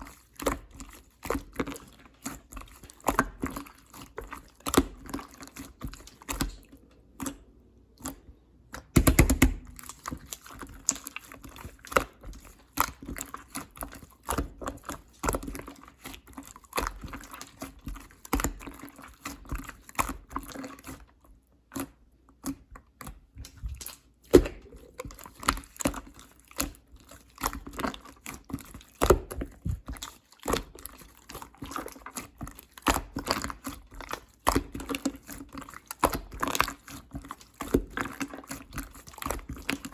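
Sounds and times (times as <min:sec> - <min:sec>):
slime squished by hand: 0:00.0 - 0:39.9.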